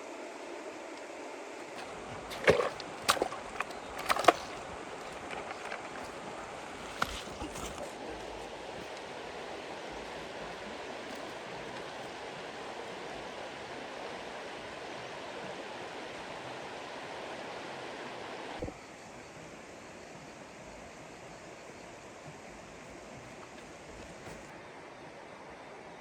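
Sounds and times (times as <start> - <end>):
flowing water rushing: 0.0 - 26.0
short sharp splashes: 1.7 - 12.2.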